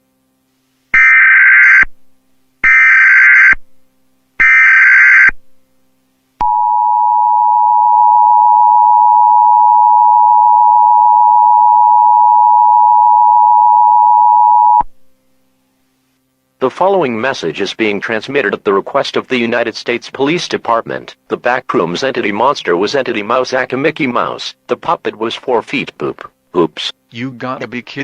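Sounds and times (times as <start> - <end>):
two-tone attention signal: 6.4 - 14.8.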